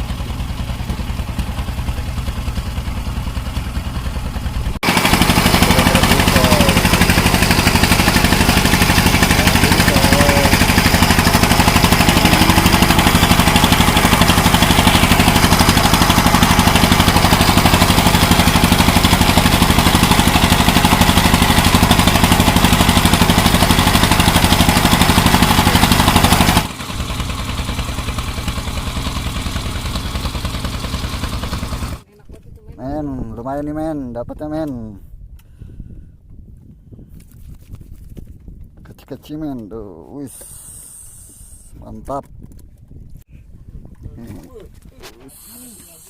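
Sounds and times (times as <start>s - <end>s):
boat engine running: 0.0s - 33.7s.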